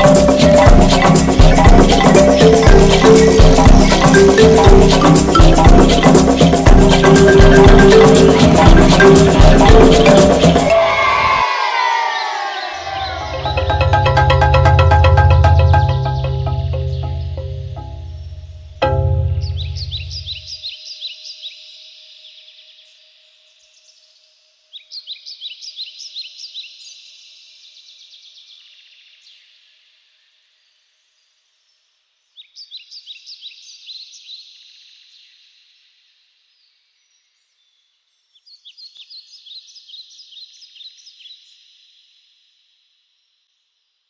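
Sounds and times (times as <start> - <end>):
bird trilling chirps: 19.2 - 20.6.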